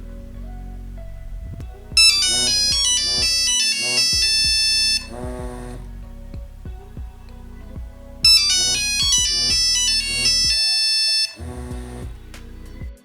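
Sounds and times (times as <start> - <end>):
soft guitar background music: 0.0 - 13.0
phone monophonic ringtone: 2.0 - 5.1, 8.2 - 11.4.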